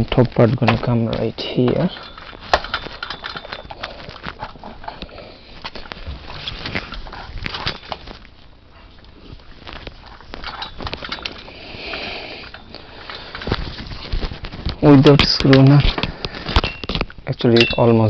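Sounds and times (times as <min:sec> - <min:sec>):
metal parts clicking and knocking: 0:00.6 - 0:05.1, 0:10.3 - 0:14.3, 0:14.9 - 0:18.0.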